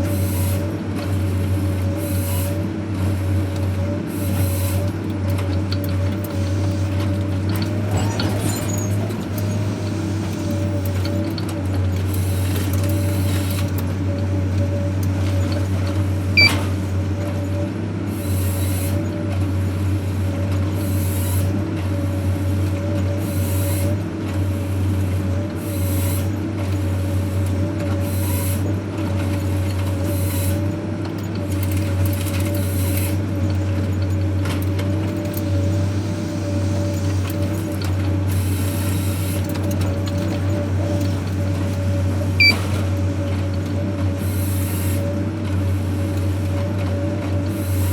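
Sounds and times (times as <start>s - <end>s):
heavy machine engine drone: 0.0s - 18.9s.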